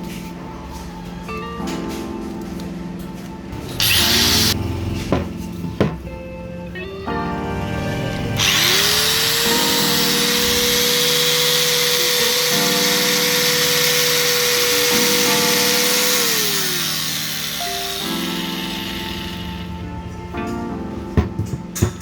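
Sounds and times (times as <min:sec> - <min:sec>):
angle grinder whining: 0:03.6 - 0:04.9, 0:07.6 - 0:19.9.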